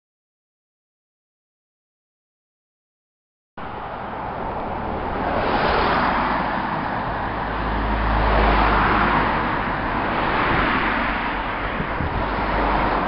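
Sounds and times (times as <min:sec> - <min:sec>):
passing cars: 0:03.6 - 0:13.0.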